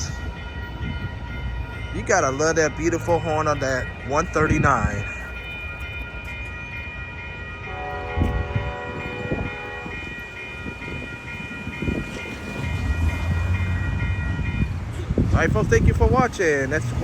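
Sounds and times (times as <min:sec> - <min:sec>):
diesel train passing: 0:00.0 - 0:17.0
low rail rumble: 0:00.0 - 0:17.0
train horn blast: 0:07.7 - 0:10.1.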